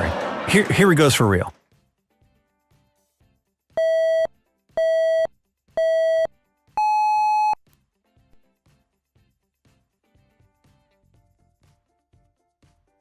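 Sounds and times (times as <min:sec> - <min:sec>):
electronic countdown beeps: 0:03.8 - 0:07.6.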